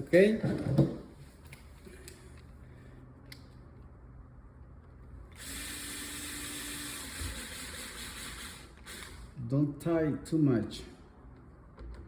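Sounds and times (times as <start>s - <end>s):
cordless drill driving screw: 5.4s - 9.3s.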